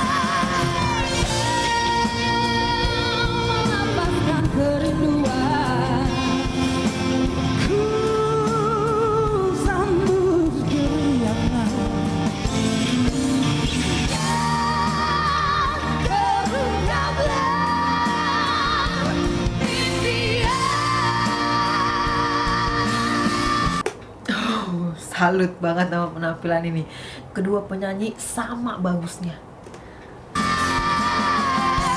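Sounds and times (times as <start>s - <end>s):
band accompaniment: 0.0s - 23.8s, 30.4s - 31.9s
pop ballad duet singing: 0.0s - 23.8s, 30.4s - 31.9s.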